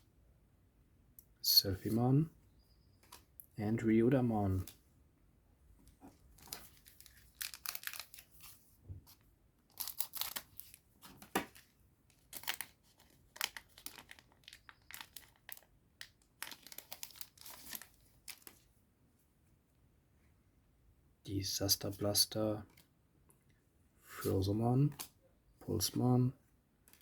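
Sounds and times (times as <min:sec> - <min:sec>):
foil wrapper tearing and crinkling: 0:06.4 - 0:08.4, 0:09.7 - 0:10.8, 0:11.4 - 0:18.6.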